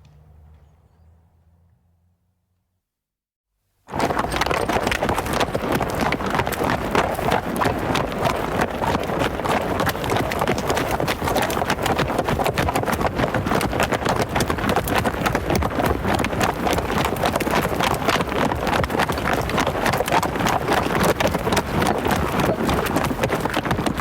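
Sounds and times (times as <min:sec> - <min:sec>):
hoofbeats of running animals: 0:03.9 - 0:24.0.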